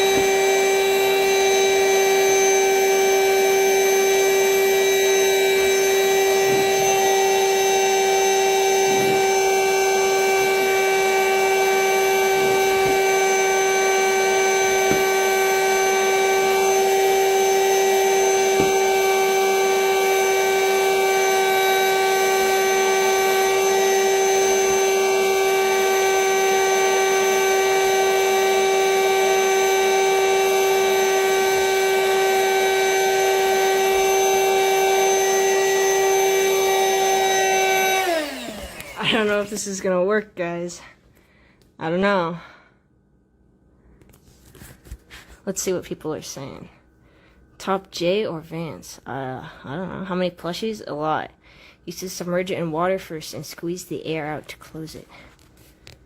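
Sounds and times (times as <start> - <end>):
vacuum cleaner whining: 0.0 - 40.9.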